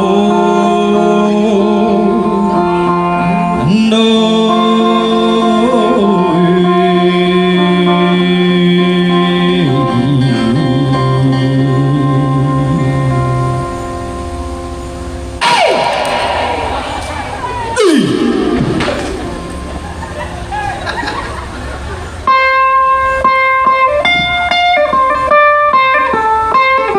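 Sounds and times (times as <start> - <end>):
person singing long notes: 0.0 - 14.0, 15.4 - 19.8
sustained accompaniment: 0.1 - 24.1.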